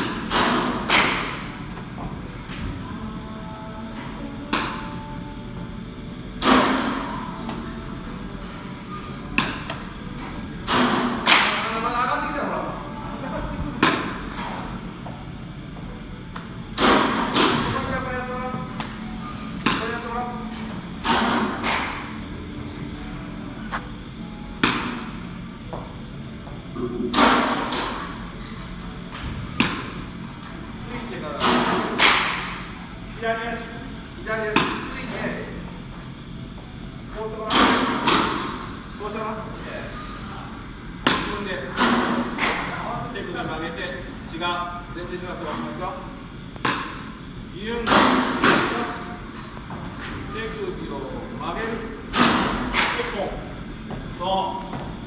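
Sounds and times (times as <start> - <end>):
baseballs striking with thuds: 9.3 - 11.7, 13.7 - 15.2, 16.3 - 17.9, 18.5 - 22.6, 24.6 - 25.9, 29.1 - 30.4, 41.0 - 42.7, 46.6 - 47.2.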